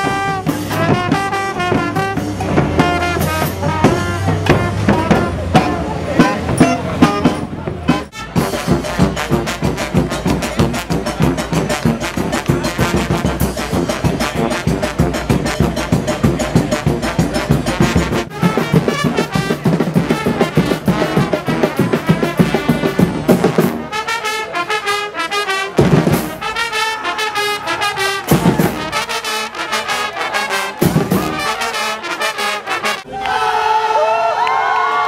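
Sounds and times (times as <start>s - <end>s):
percussion hits: 0.0s - 24.0s, 25.8s - 26.8s, 27.4s - 29.4s, 30.7s - 31.9s
street brass band playing: 0.0s - 33.9s
crowd cheering and shouting: 25.8s - 35.0s.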